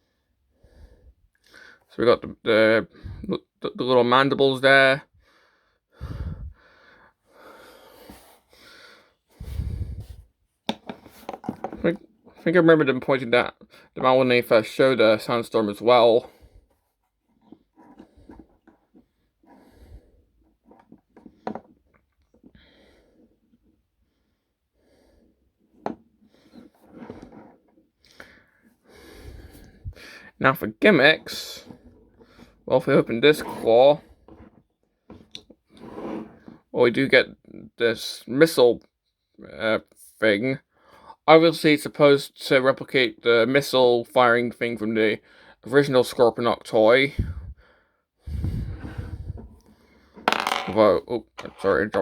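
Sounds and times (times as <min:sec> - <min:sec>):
person breathing close to microphone: 0:00.0 - 0:01.9, 0:02.9 - 0:03.3, 0:05.2 - 0:10.4, 0:18.0 - 0:20.4, 0:28.0 - 0:30.4, 0:47.1 - 0:50.3.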